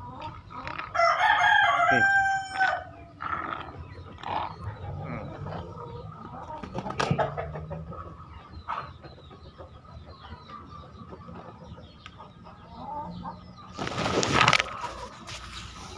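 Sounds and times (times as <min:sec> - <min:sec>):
chicken clucking: 0:00.0 - 0:15.9
chicken snoring rattle breathing: 0:03.2 - 0:06.4.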